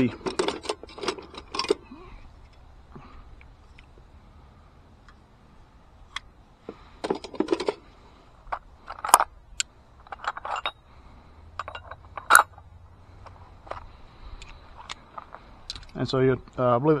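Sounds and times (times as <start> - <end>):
metal tools clattering: 0.0 - 2.0, 7.0 - 7.9, 10.0 - 12.7.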